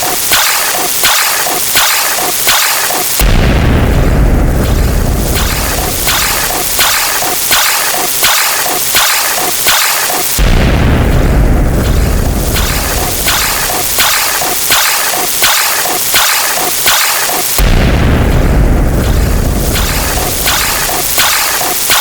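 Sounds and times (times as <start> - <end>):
repeating sharp sound: 0.0 - 22.0
deep boom: 3.2 - 7.2, 10.4 - 14.0, 17.6 - 21.0.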